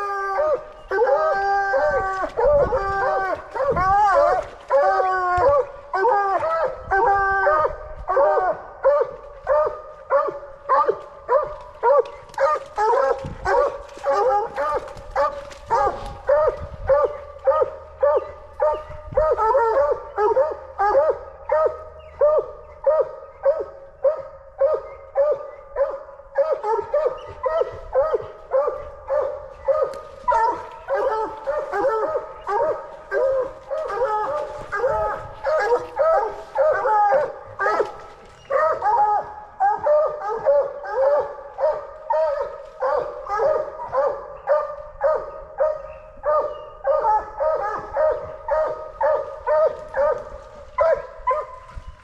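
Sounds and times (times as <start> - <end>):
dogs barking: 0.0 - 52.0.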